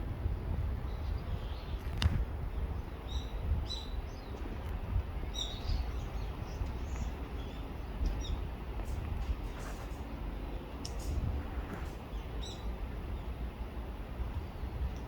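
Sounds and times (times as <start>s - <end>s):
steady low rumble: 0.0s - 15.0s
small birds chirping: 5.2s - 11.2s, 11.8s - 13.4s.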